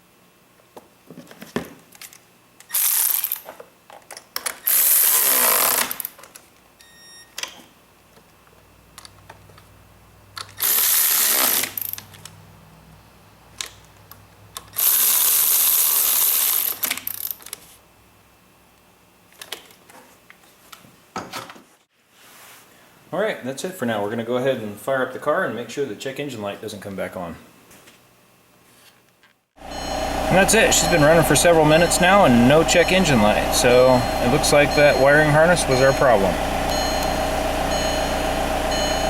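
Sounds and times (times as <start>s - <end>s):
power tool running: 29.6s - 39.0s.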